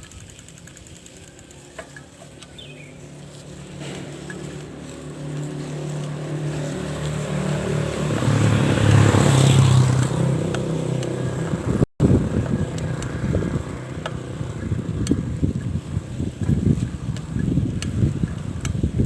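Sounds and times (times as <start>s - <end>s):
rough rumbling noise: 2.2s - 19.0s
vehicle engine revving: 2.7s - 19.0s.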